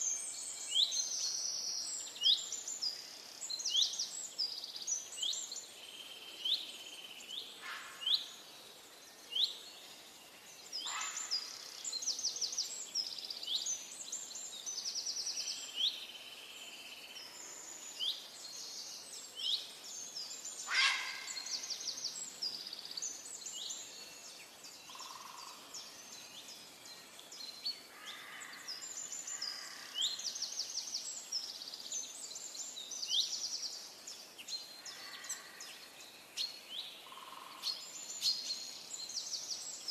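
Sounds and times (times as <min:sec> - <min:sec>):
songbirds chirping and trilling: 0:00.0 - 0:39.9.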